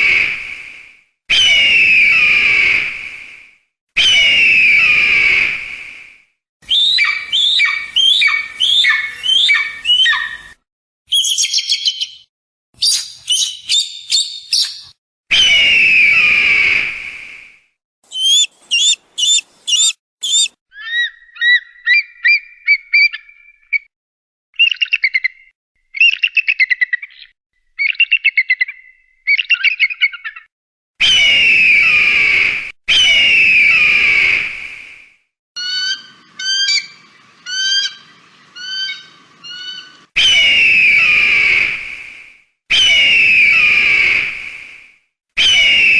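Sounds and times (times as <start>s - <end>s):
eagle harsh screams: 4.0s - 5.6s, 18.1s - 20.5s, 31.0s - 34.5s, 42.7s - 44.3s, 45.4s - 45.9s
eagle chirps and trills: 6.7s - 15.7s, 18.1s - 23.5s, 35.6s - 41.6s.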